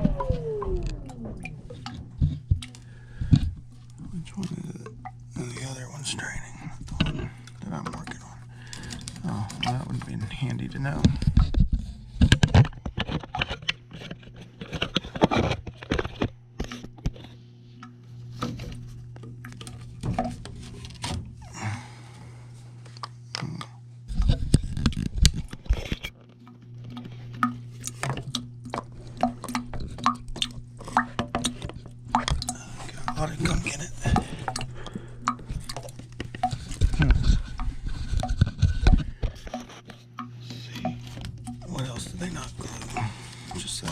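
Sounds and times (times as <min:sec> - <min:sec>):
steady low hum: 0:00.0 - 0:43.9
plastic pipes clattering: 0:06.8 - 0:17.3, 0:18.4 - 0:21.3, 0:24.1 - 0:43.9.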